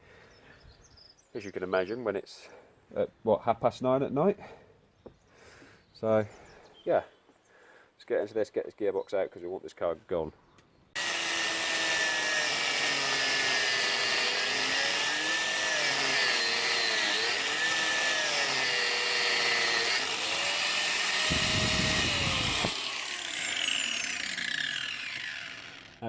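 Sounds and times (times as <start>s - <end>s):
high-speed power tool running: 11.0s - 26.0s.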